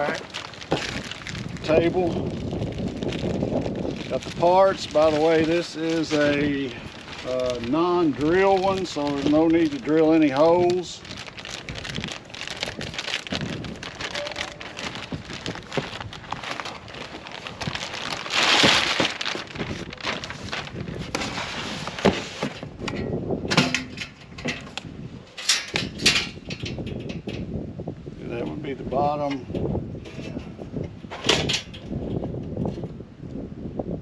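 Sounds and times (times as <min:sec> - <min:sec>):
packaging crackling and rustling: 0:00.0 - 0:23.0
clicks and knocks of parts: 0:22.4 - 0:27.4.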